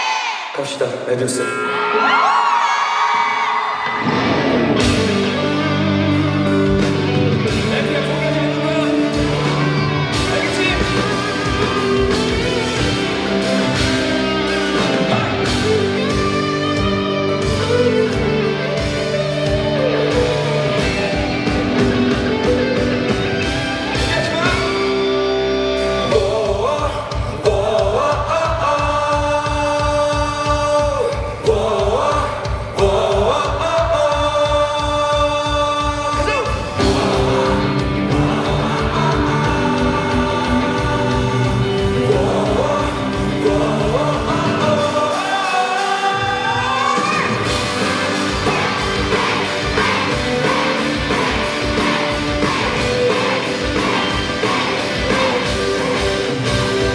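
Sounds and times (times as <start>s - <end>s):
guitar: 1.2s - 56.9s
live pop-rock band: 1.4s - 56.9s
person singing: 25.8s - 56.9s
drum beat: 47.2s - 56.9s.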